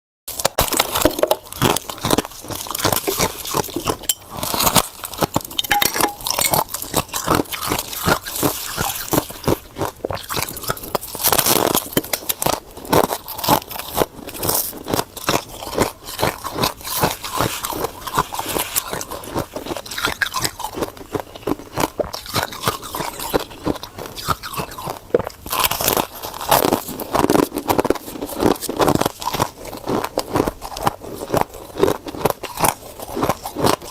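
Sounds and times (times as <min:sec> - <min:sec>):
frost being chewed crunching: 0:00.3 - 0:33.9.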